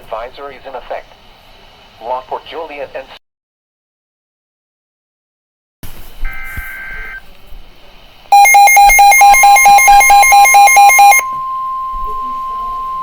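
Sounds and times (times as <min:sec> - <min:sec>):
data tones: 0:08.3 - 0:13.0
pulsing alarm beeps: 0:08.3 - 0:13.0
steady alarm tone: 0:08.3 - 0:13.0.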